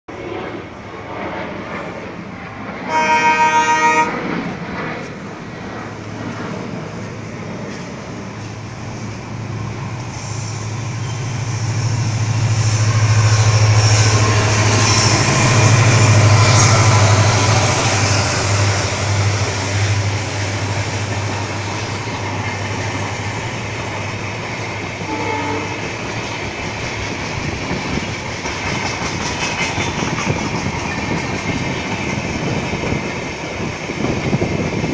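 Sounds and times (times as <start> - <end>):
coaches rumbling and clattering on rails: 0.1 - 34.9
locomotive horn blast: 2.9 - 4.2, 25.0 - 26.0
diesel engine low drone: 4.1 - 25.7.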